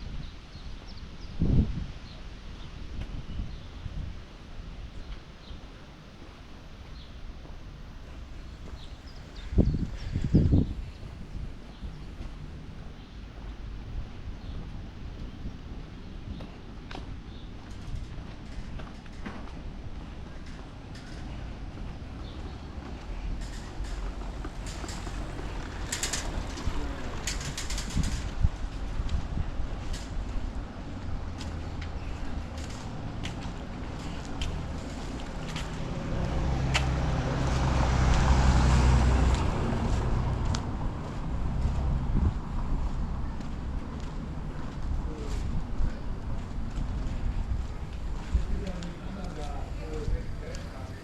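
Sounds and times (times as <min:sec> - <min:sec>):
wind rumble on microphone: 0:00.0 - 0:51.0
vehicle driving past: 0:21.9 - 0:28.4, 0:30.8 - 0:51.0.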